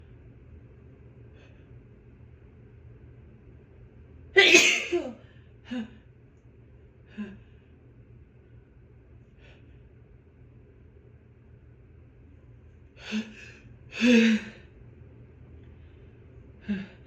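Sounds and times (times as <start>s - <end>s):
woman sneezing: 4.4s - 5.2s.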